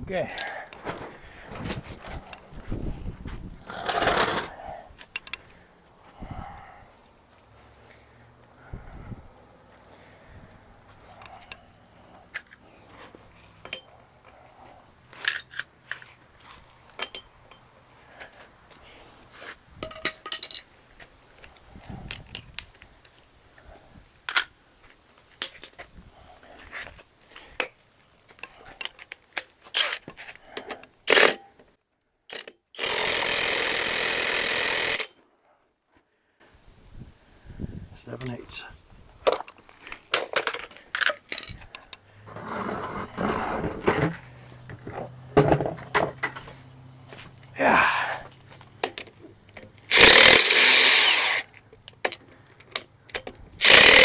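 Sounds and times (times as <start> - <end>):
hand tools clinking on metal: 0.2 - 0.9
power tool running: 32.8 - 35.0, 49.9 - 51.4, 53.6 - 54.0.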